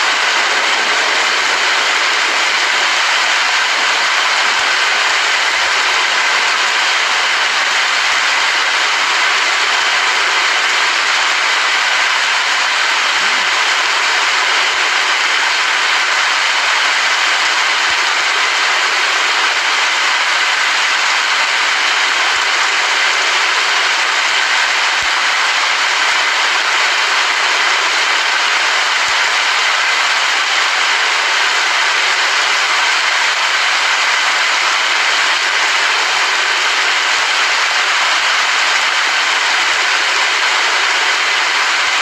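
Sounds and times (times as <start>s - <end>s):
heavy rain falling: 0.0s - 42.0s.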